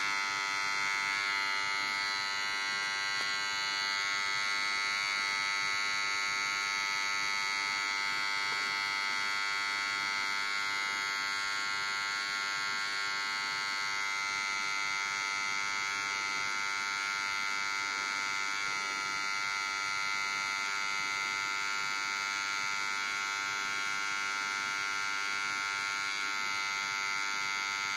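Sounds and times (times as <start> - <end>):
harsh electrical buzz: 0.0 - 27.9.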